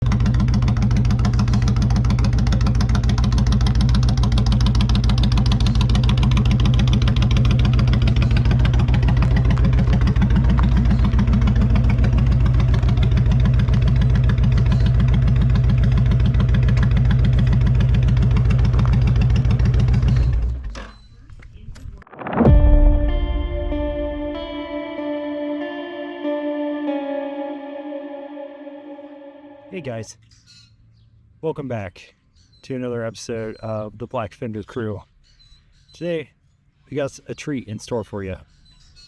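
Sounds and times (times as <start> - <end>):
car engine idling: 0.0 - 20.7.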